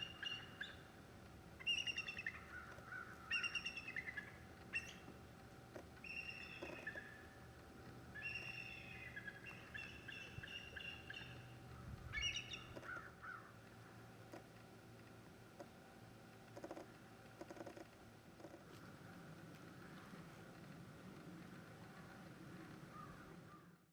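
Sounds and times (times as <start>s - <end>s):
eagles calling: 1.6s - 7.4s, 8.1s - 13.5s.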